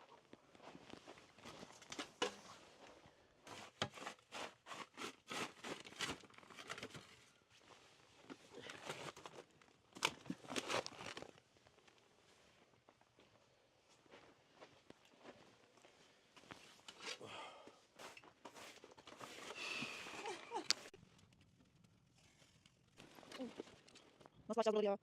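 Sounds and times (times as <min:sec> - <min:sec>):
crinkly rustling and crunching: 0:00.0 - 0:13.4, 0:18.0 - 0:24.4.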